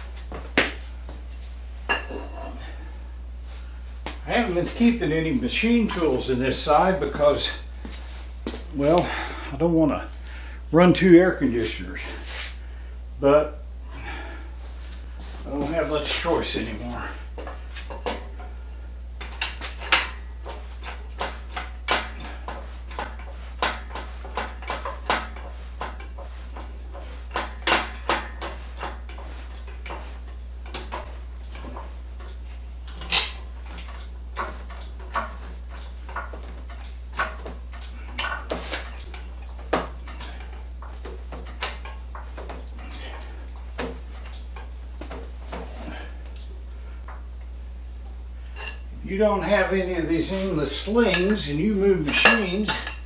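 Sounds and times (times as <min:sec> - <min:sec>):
steady low hum: 0:00.0 - 0:53.0
steel gear clinking and clanking: 0:19.2 - 0:44.7, 0:50.2 - 0:53.0.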